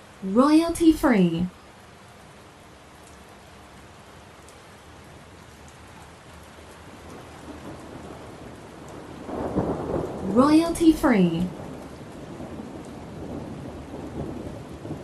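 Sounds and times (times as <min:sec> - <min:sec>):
rain falling: 0:00.0 - 0:15.0
thunder rumbling: 0:07.1 - 0:15.0.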